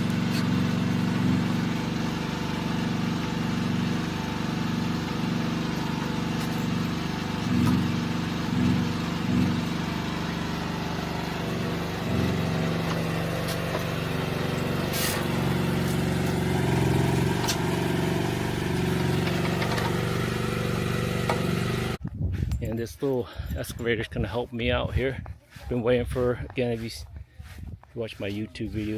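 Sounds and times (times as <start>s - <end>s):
small excavator engine running: 0.0s - 22.0s.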